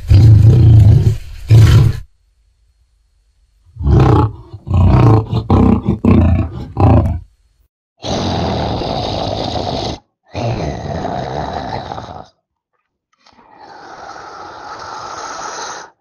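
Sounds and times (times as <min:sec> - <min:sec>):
monster roaring growls: 0:03.8 - 0:07.2, 0:08.0 - 0:12.4, 0:13.3 - 0:16.0
rasping monster breath: 0:13.3 - 0:16.0.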